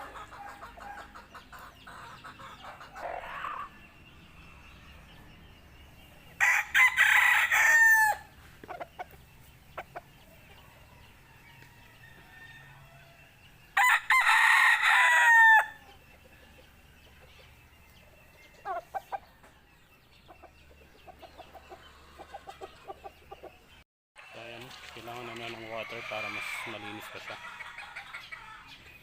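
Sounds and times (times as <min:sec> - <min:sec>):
chicken clucking: 0:00.0 - 0:04.0, 0:08.4 - 0:11.1, 0:15.8 - 0:23.8, 0:24.6 - 0:29.0
rooster crowing: 0:06.4 - 0:08.3, 0:13.8 - 0:15.8.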